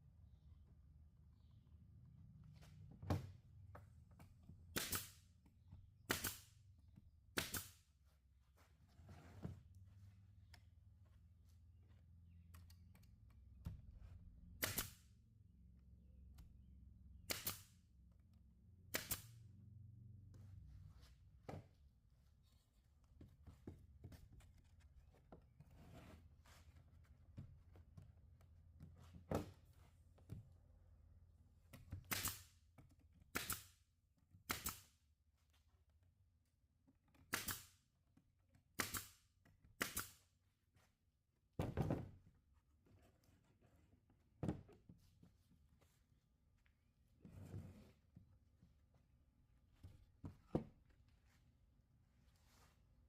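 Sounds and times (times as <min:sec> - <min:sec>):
sharp snaps or knocks: 0:06.1 - 0:06.5, 0:07.4 - 0:07.8, 0:14.6 - 0:15.0, 0:17.3 - 0:17.8, 0:18.9 - 0:19.4, 0:32.1 - 0:32.5, 0:33.3 - 0:33.7, 0:38.8 - 0:39.2, 0:39.8 - 0:40.2.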